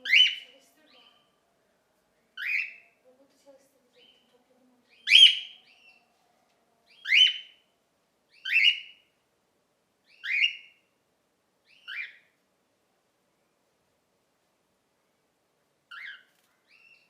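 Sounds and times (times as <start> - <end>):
cockatiel calls: 5.0 - 6.0, 6.9 - 7.6, 8.3 - 9.0, 10.1 - 10.8, 11.7 - 12.3.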